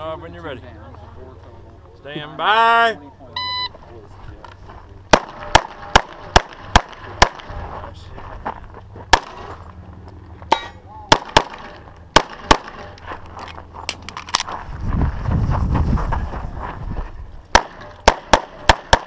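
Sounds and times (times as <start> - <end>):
pistol shots: 5.1 - 7.5, 9.1 - 9.5, 10.5 - 13.0, 17.5 - 19.0.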